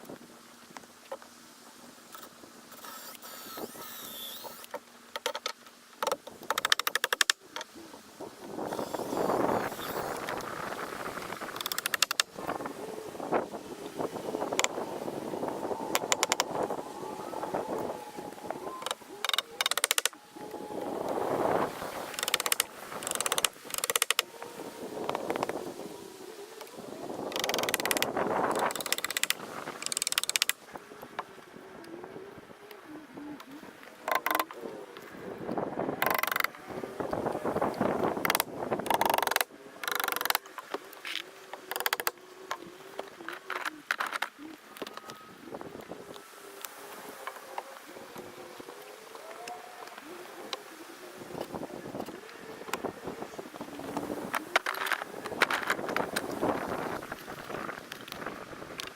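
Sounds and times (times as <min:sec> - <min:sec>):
rapid mechanical clicking: 0:02.2 - 0:07.4, 0:11.3 - 0:12.3, 0:18.8 - 0:20.2, 0:22.2 - 0:24.2, 0:27.3 - 0:30.6
faint wavering hum: 0:12.3 - 0:23.0
hand tool clicking rapidly: 0:18.8 - 0:20.1, 0:22.2 - 0:24.2.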